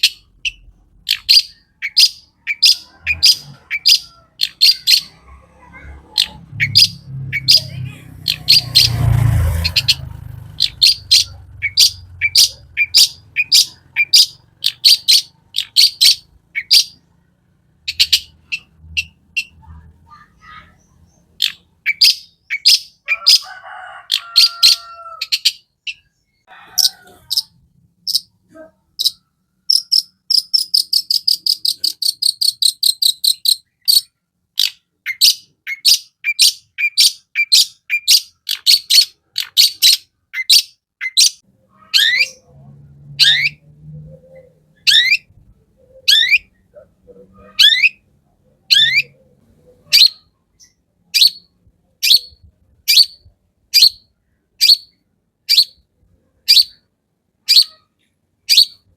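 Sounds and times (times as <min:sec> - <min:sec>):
shrike singing sharp chirps: 0:06.2 - 0:17.1.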